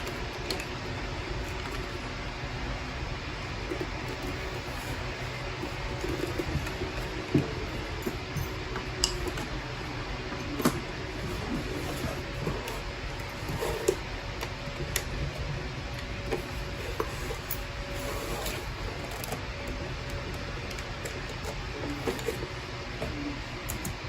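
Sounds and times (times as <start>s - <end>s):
steady fan-like hum: 0.0s - 24.0s
clicks and knocks of tools: 8.0s - 9.5s.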